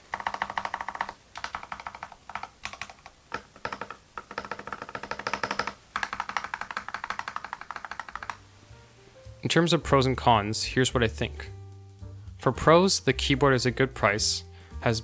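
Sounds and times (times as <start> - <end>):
mechanical keyboard typing: 0.0 - 8.4.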